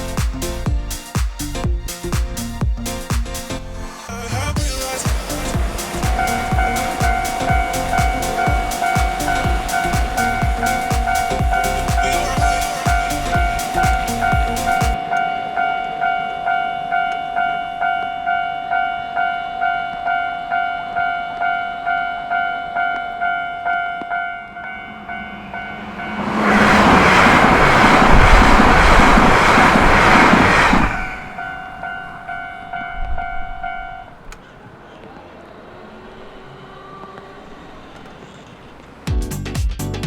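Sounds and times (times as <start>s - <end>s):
train rushing past: 0.0s - 17.9s, 24.7s - 39.1s
level-crossing bell ringing: 4.8s - 26.2s, 31.4s - 34.1s.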